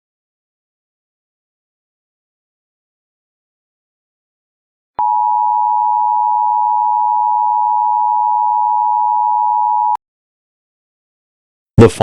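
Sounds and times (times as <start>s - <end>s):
two-tone emergency alert signal: 5.0s - 10.0s.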